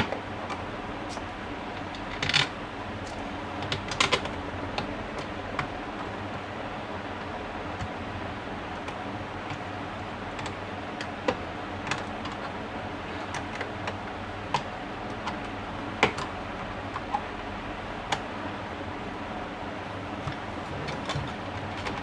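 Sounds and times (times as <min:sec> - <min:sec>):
steady background noise: 0:00.0 - 0:22.0
small clicks and taps: 0:13.3 - 0:16.3.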